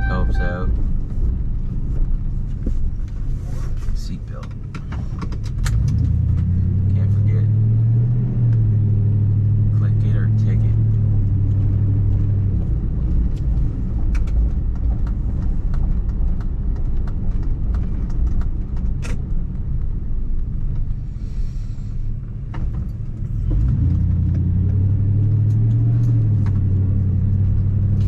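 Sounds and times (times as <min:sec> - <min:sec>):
car cabin rumble: 0:00.0 - 0:07.5
low engine hum: 0:00.0 - 0:28.0.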